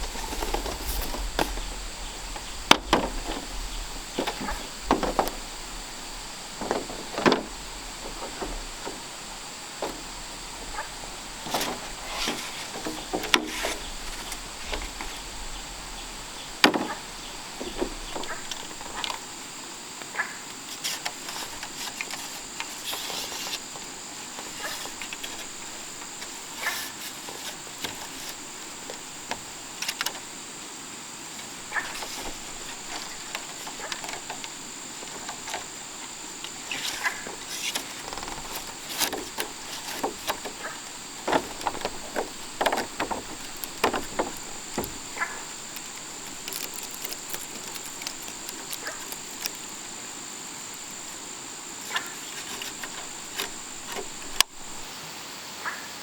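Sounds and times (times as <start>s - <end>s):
bamboo knocking and clattering: 0.0s - 30.4s, 31.4s - 54.9s
insects buzzing: 0.0s - 56.0s.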